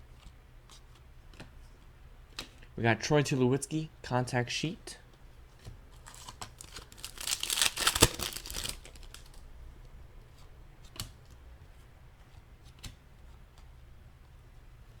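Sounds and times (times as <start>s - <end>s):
card pack wrapper tearing: 6.0s - 9.4s
cards clicking: 6.1s - 9.4s.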